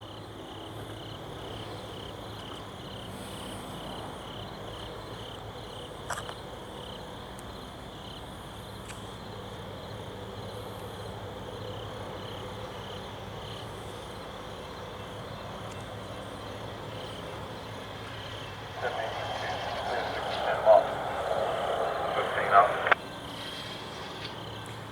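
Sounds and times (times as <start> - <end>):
insects chirping pulsing trill: 16.4 - 24.7
low steady hum: 18.4 - 23.1.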